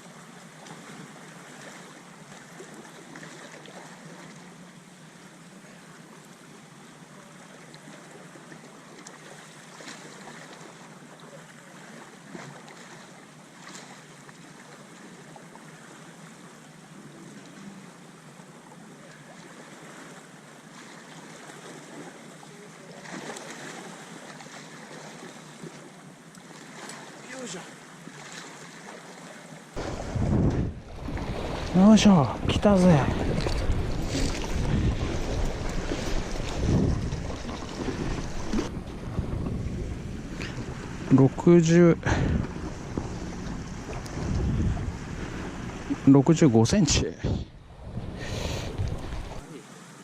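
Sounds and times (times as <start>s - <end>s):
sea water washing: 0.0s - 50.0s
wind noise: 29.8s - 46.1s, 46.8s - 49.5s.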